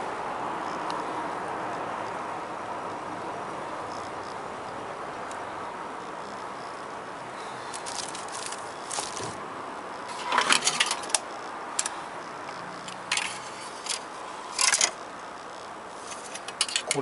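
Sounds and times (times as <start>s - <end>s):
small hard parts clicking and rattling: 7.6s - 9.4s, 10.0s - 17.0s.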